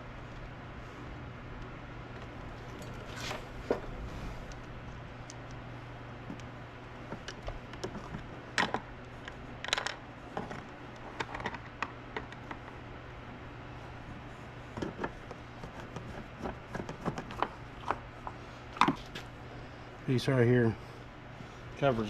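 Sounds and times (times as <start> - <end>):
low hum: 0.0 - 22.0.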